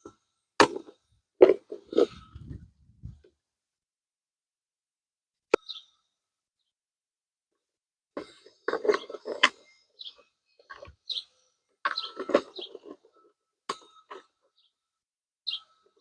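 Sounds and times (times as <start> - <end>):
plastic plant pots clattering: 0.7 - 3.2, 8.2 - 9.7, 11.9 - 13.1.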